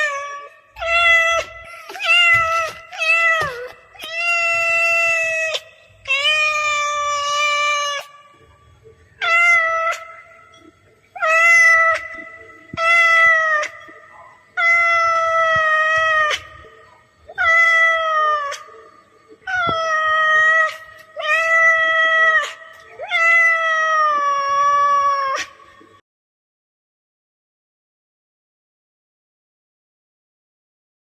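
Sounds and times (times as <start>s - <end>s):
cat meowing: 0.0s - 8.4s, 9.2s - 10.3s, 11.2s - 16.7s, 17.3s - 18.7s, 19.5s - 25.6s.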